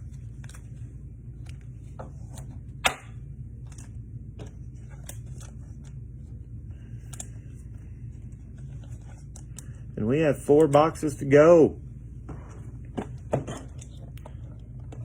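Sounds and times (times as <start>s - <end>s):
cards and packaging rustling: 0.0s - 2.6s, 3.6s - 6.3s
steady low hum: 0.0s - 15.0s.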